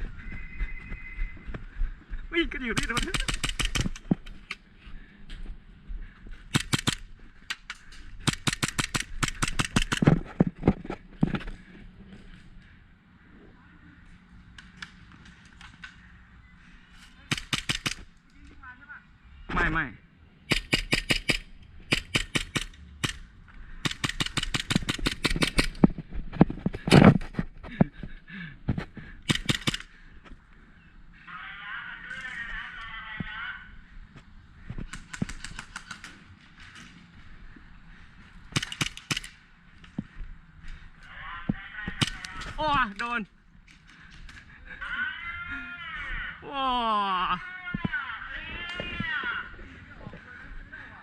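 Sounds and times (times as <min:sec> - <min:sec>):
airsoft guns firing: 0:02.7 - 0:04.0, 0:06.5 - 0:07.1, 0:07.7 - 0:10.1, 0:17.2 - 0:18.1, 0:20.5 - 0:25.8, 0:29.2 - 0:30.0, 0:34.9 - 0:36.9, 0:38.5 - 0:39.4, 0:41.9 - 0:42.6
airsoft gun shots: 0:17.3 - 0:18.0, 0:20.5 - 0:23.2, 0:29.3 - 0:29.9, 0:38.5 - 0:39.3.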